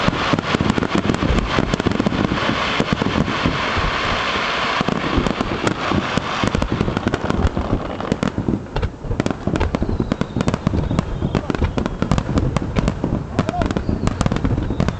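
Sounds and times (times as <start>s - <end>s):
fireworks bangs and crackles: 0.0s - 14.9s
steady hiss: 0.0s - 14.9s.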